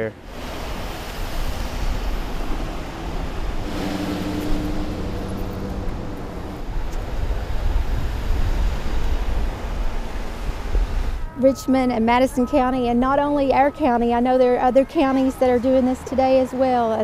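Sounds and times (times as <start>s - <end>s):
outdoor noise: 0.0s - 17.0s
wind rumbling on microphone: 0.2s - 11.4s
steady held tone: 2.5s - 8.0s.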